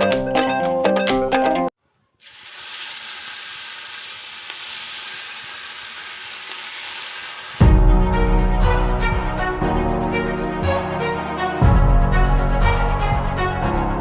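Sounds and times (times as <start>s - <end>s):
background music: 0.0s - 1.7s, 7.6s - 14.0s
chicken frying in hot oil: 2.2s - 7.6s.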